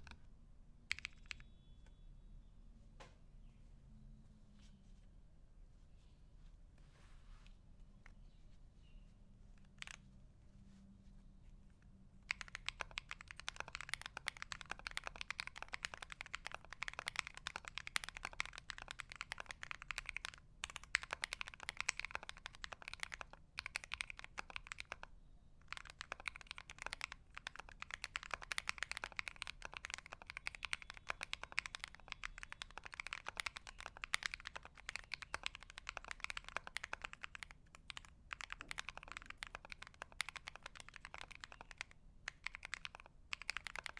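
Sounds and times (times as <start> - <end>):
mechanical keyboard typing: 0.9 - 1.4, 9.7 - 10.0, 12.2 - 43.9.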